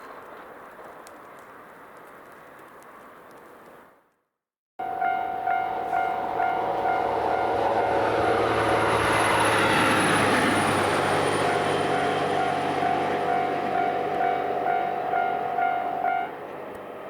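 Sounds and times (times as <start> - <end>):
level crossing warning bell: 4.8 - 16.5
passing train rushing: 4.8 - 17.0.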